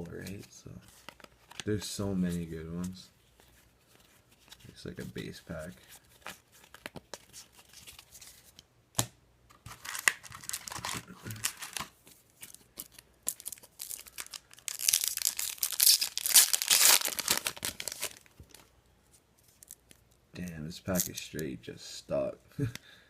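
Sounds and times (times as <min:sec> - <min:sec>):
wrapper tearing and crinkling: 0:09.7 - 0:18.6.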